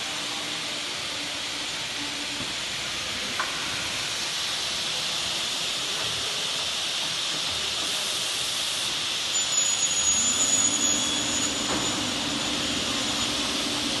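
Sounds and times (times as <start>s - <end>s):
machine steady hiss: 0.0s - 14.0s
high-pitched spindle whine: 9.4s - 14.0s.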